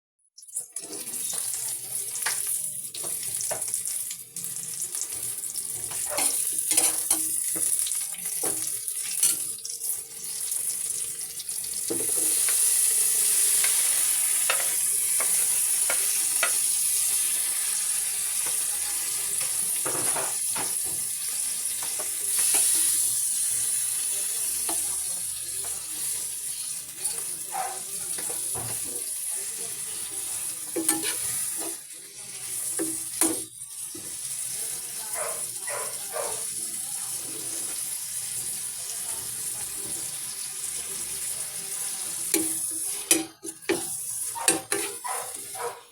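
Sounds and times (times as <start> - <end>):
food sizzling in oil: 0.3 - 45.9
utensil scraping pan: 5.9 - 7.2, 30.7 - 31.8, 42.4 - 45.9.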